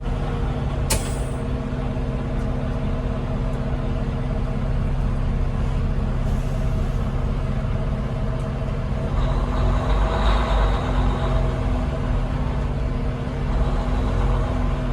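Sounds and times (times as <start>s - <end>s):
diesel engine running: 0.0s - 14.9s
sharp click: 0.9s - 1.4s.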